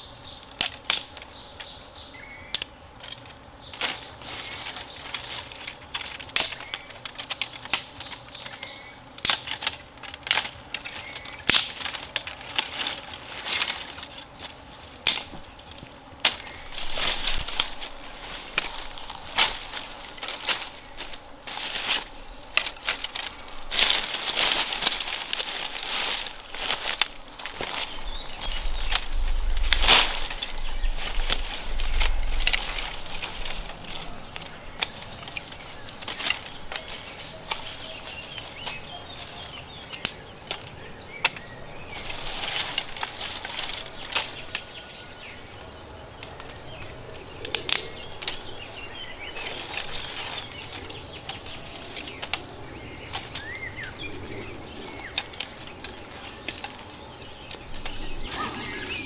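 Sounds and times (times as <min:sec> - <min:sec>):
bird chirps: 0:57.1 - 0:59.0.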